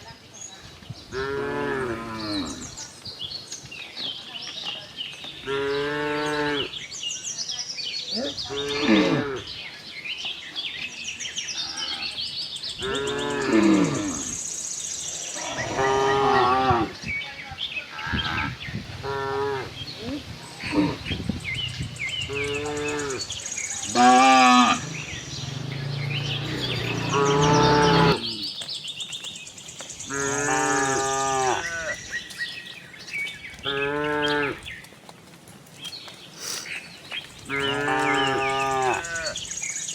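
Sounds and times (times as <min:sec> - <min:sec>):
cows mooing: 0:15.4 - 0:17.0, 0:22.3 - 0:28.5, 0:30.0 - 0:32.1, 0:37.4 - 0:39.4.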